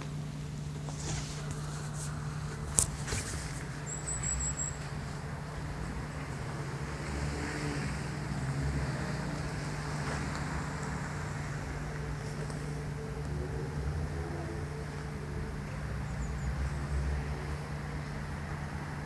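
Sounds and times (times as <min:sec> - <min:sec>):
road traffic rumble: 0:00.0 - 0:19.0
thin high whistle: 0:03.1 - 0:05.3.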